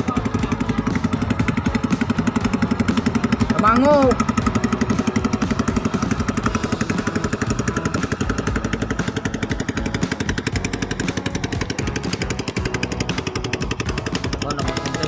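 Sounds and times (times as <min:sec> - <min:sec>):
small boat engine running: 0:00.0 - 0:15.0.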